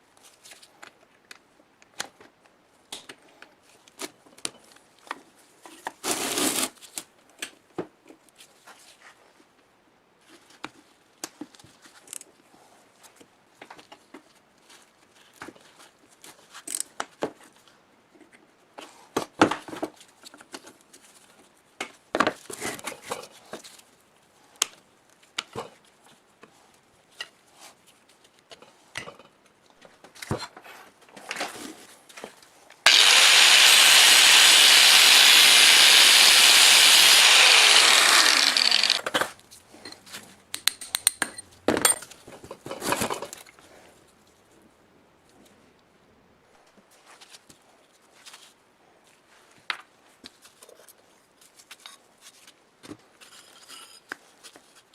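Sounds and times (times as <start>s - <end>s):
power tool running: 32.9s - 39.2s
metal tools clicking and knocking: 40.5s - 42.1s.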